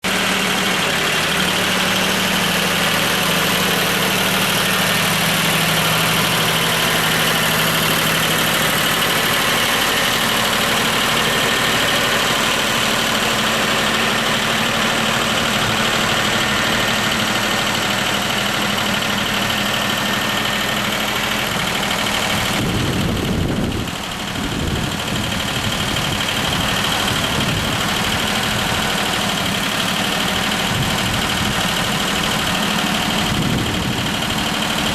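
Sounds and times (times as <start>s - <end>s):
tractor diesel engine idling: 0.0s - 34.9s.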